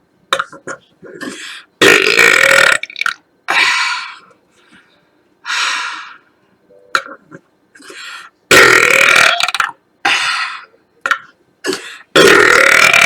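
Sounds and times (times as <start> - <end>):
woman burping: 12.2 - 13.0.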